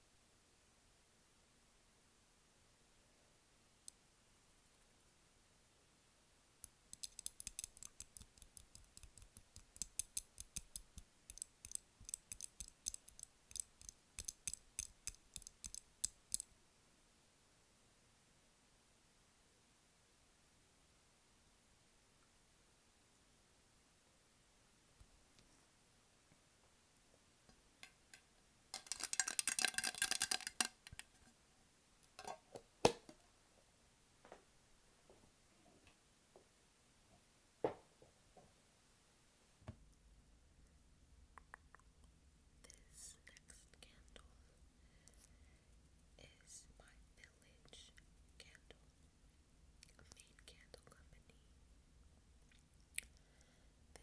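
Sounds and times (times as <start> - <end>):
rapid tapping on a candle: 6.9 - 16.4.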